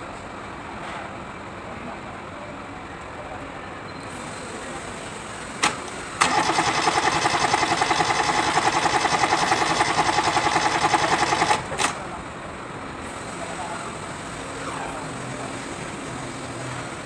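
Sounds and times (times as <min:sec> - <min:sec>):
starter motor whining: 0:05.6 - 0:12.1.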